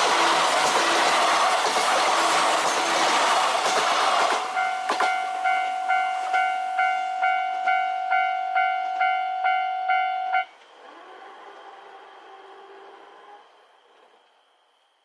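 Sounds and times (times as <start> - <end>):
level crossing bell ringing: 4.6 - 10.4.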